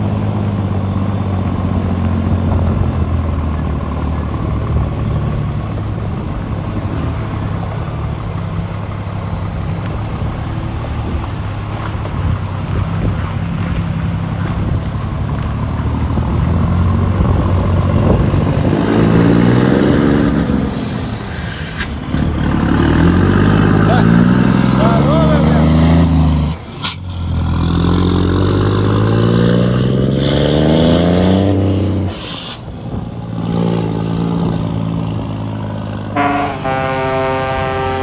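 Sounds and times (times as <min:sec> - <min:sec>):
diesel truck engine running: 0:00.0 - 0:38.0
air hiss: 0:20.6 - 0:22.2, 0:26.4 - 0:27.2, 0:31.5 - 0:33.2.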